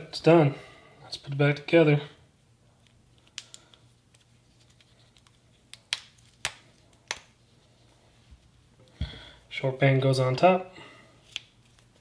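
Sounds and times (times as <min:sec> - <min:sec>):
small sharp plastic clicks and snaps: 0:03.2 - 0:03.8.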